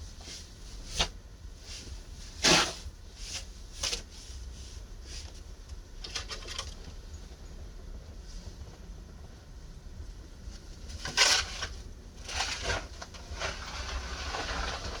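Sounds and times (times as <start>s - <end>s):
snow shovel scraping through snow: 11.1s - 15.0s.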